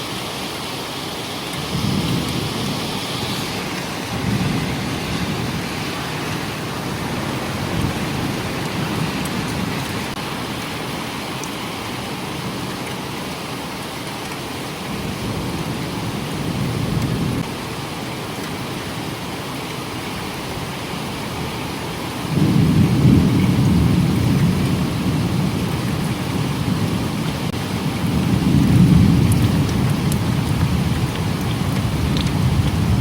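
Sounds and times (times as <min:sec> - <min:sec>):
heavy rain: 0:00.0 - 0:33.0
rolling thunder: 0:01.6 - 0:10.2, 0:22.2 - 0:33.0.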